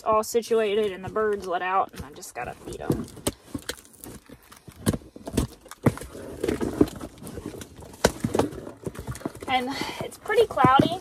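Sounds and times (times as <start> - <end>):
cardboard rustling: 0.0 - 11.0
cardboard package clicks and knocks: 2.7 - 9.5.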